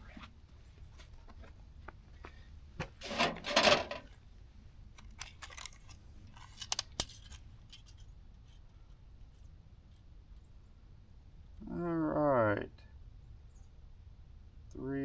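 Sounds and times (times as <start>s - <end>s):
metal scraping on metal: 3.0s - 4.1s.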